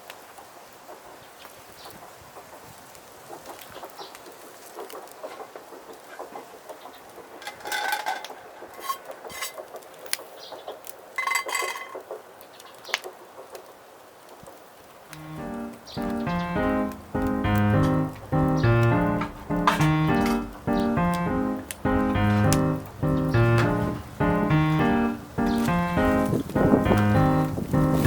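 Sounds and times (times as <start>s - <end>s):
cookware and utensils clinking: 7.4s - 9.6s, 11.2s - 12.0s
piano music: 15.1s - 28.0s.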